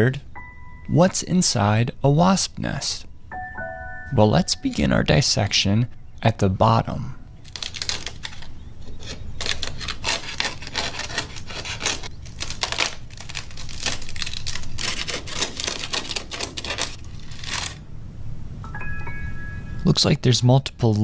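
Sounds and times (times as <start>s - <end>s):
wasp nest tearing and crackling: 7.4s - 17.8s.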